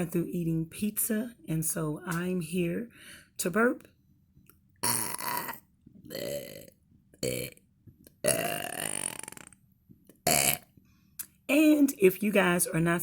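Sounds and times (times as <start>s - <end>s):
woman burping: 4.8s - 7.6s, 8.2s - 9.6s, 10.3s - 10.6s.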